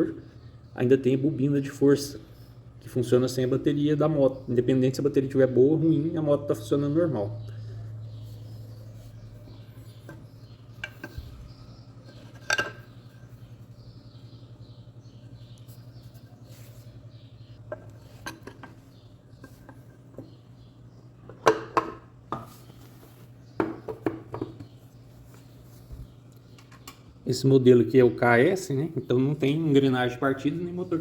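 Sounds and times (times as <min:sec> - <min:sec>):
steady low hum: 0:00.0 - 0:31.0
metal tools clinking and knocking: 0:12.1 - 0:12.9.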